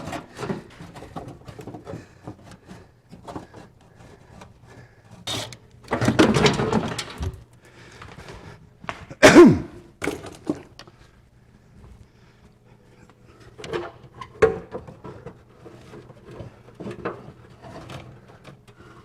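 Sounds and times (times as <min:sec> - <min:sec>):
metal rattling and scraping: 0:00.0 - 0:07.4.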